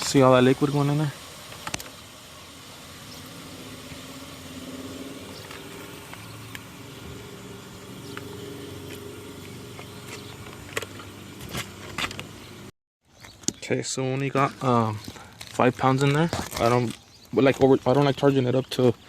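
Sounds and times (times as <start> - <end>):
refrigerant hissing with whine: 0.0 - 12.7.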